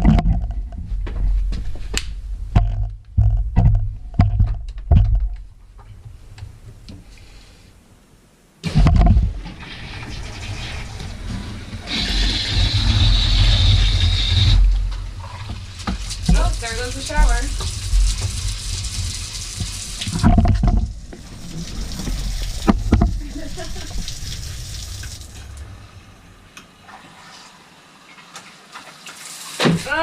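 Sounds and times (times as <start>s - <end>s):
handling knocks and clicks: 0.0s - 5.5s
shower water rushing: 9.3s - 30.0s
low rumble: 12.4s - 26.6s.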